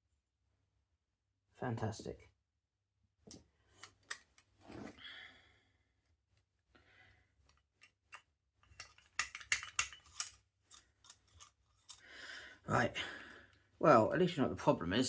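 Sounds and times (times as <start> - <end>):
small parts clicking and knocking: 7.4 - 12.1.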